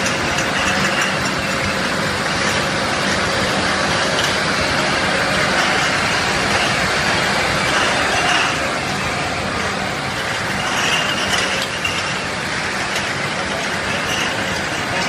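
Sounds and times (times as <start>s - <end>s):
bottle washing machine running: 0.0s - 15.0s.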